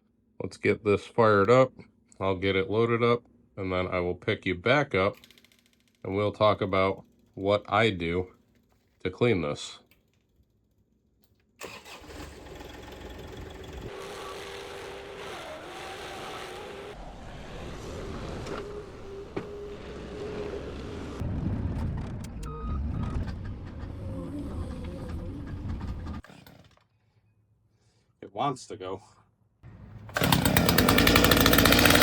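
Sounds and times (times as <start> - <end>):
stump grinder engine running: 11.7 - 16.9, 29.8 - 32.0.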